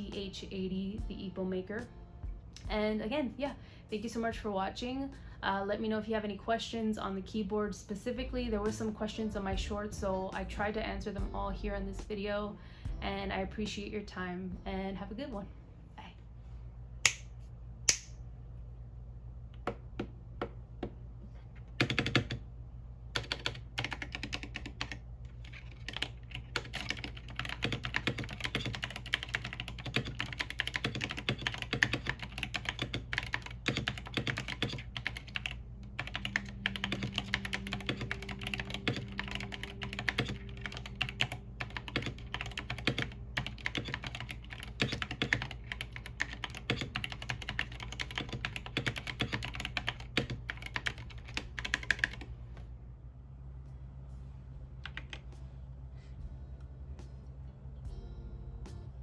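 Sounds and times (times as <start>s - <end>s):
mechanical keyboard typing: 21.8s - 22.4s, 23.2s - 52.3s.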